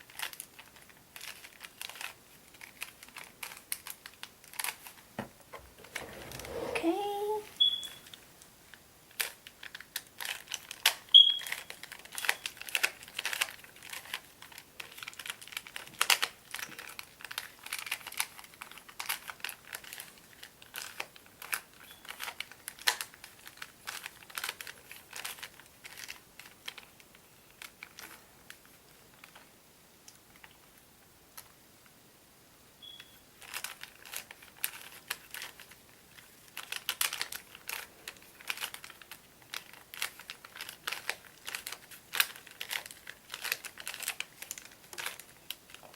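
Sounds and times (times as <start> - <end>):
puzzle cube clicking as twisted: 15.0 - 16.3.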